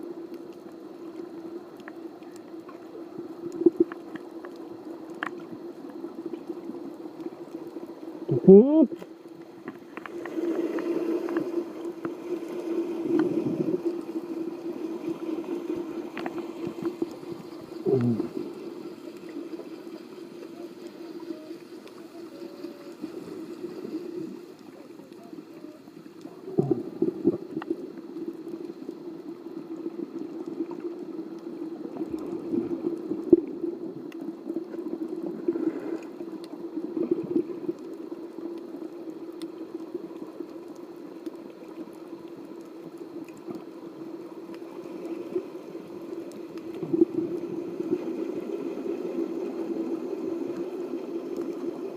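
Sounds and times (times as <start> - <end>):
underwater low drone: 0.0 - 51.9
water gurgling and bubbling: 9.8 - 24.6, 25.4 - 28.0, 46.6 - 51.2.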